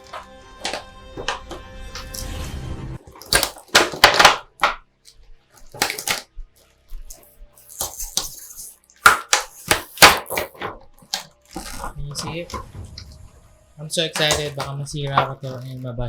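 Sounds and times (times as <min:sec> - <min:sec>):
plastic packaging crinkling: 0:00.0 - 0:02.3, 0:03.0 - 0:12.6, 0:14.1 - 0:15.9
plastic pieces clicking and knocking: 0:00.0 - 0:02.3, 0:03.1 - 0:04.8, 0:05.6 - 0:06.2, 0:07.0 - 0:12.7, 0:14.1 - 0:15.9
background music: 0:00.0 - 0:16.0.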